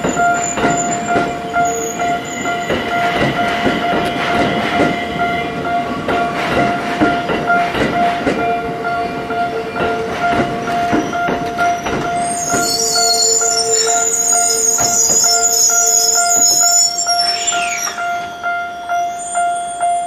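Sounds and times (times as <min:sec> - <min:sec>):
high wheel squeal: 0:00.0 - 0:05.4, 0:09.0 - 0:20.0
train wheels clacking over rail joints: 0:00.0 - 0:15.5
level crossing warning bell: 0:00.0 - 0:20.0.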